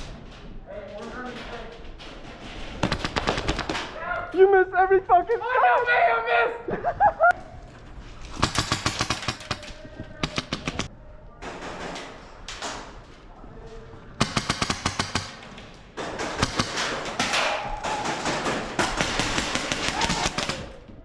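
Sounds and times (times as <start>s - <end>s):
airsoft guns firing full auto: 2.8s - 4.0s, 16.0s - 20.8s.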